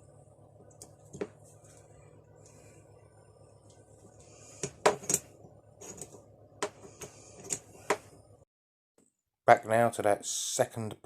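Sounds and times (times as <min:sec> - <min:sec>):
faint steady hum: 0:00.0 - 0:08.5.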